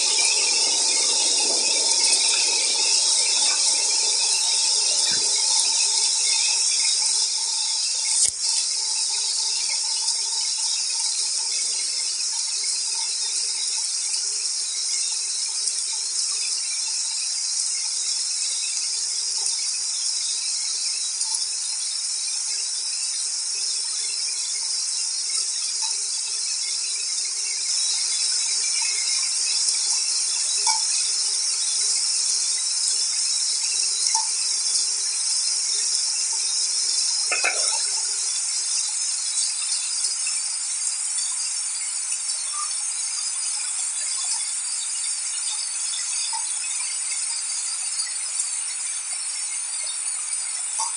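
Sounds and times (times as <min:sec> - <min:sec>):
steady rain hiss: 0:00.0 - 0:12.7, 0:26.6 - 0:43.6
faint ticks of drops: 0:08.1 - 0:08.7, 0:37.2 - 0:40.3.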